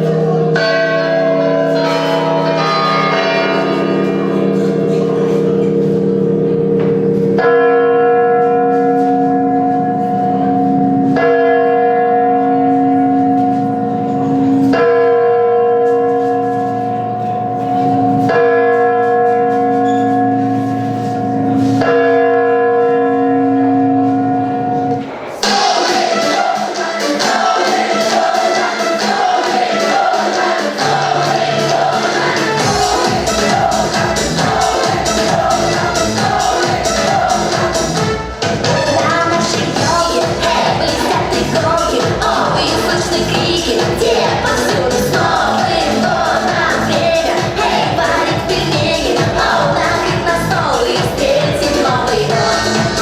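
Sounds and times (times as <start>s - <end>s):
deep bell tolling: 0.0s - 25.6s, 30.8s - 38.0s
cluster of bells ringing: 0.0s - 38.0s.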